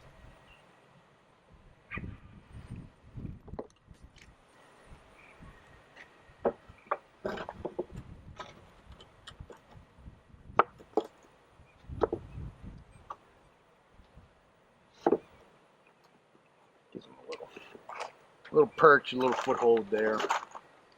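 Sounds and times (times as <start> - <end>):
wooden pieces knocking and clattering: 3.4 - 3.8, 6.4 - 9.8, 10.6 - 11.4, 12.0 - 12.3, 15.0 - 16.2, 19.1 - 20.7.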